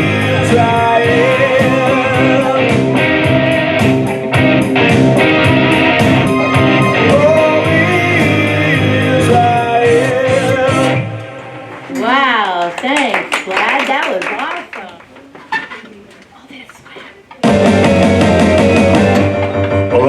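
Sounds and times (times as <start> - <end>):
band music with guitars: 0.0 - 12.2, 17.4 - 20.0
gliding melody line: 4.8 - 9.0.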